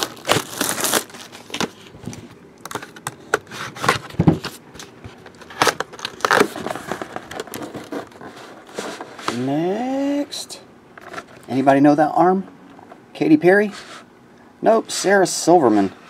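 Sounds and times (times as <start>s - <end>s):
photographs and packaging rustling: 0.0s - 9.6s, 11.0s - 11.6s.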